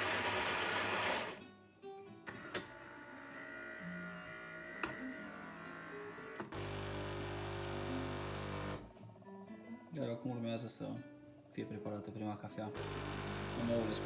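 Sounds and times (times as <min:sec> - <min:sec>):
coffee grinder: 0:00.0 - 0:01.4, 0:03.0 - 0:08.9, 0:12.8 - 0:14.0
soft guitar music: 0:01.4 - 0:06.6, 0:07.8 - 0:14.0.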